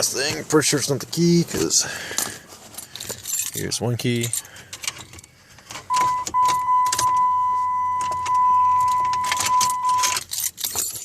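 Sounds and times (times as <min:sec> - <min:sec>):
car keys jangling: 0:02.2 - 0:11.0
high electronic beep: 0:05.9 - 0:10.2.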